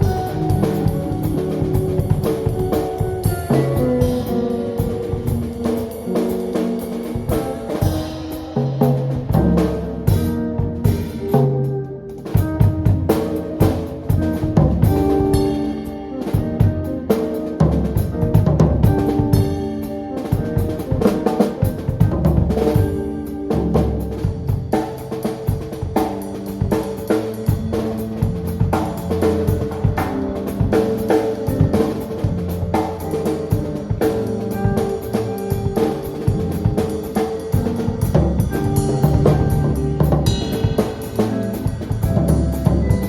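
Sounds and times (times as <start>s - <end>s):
bass line: 0.0s - 11.3s, 21.7s - 43.0s
band playing instrumental: 0.0s - 43.0s
drum kit: 0.0s - 43.0s
sustained pitched notes: 27.7s - 43.0s.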